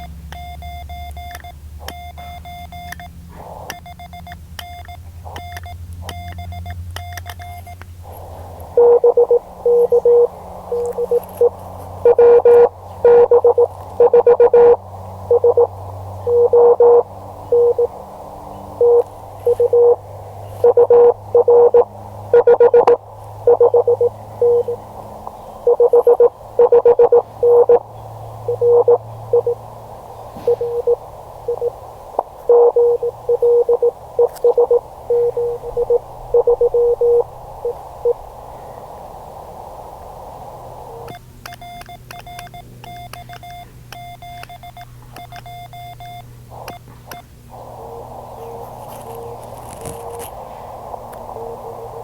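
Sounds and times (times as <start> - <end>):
morse code keyed tone: 0.0 - 3.1, 3.8 - 7.8, 8.8 - 17.9, 18.8 - 20.0, 20.6 - 24.8, 25.6 - 29.6, 30.4 - 31.8, 32.4 - 38.2, 41.1 - 47.3
faint keyed signal: 0.0 - 20.0, 20.6 - 24.8, 25.6 - 29.7, 30.4 - 52.0
radio band hiss: 3.2 - 4.1, 5.0 - 43.8, 44.9 - 52.0.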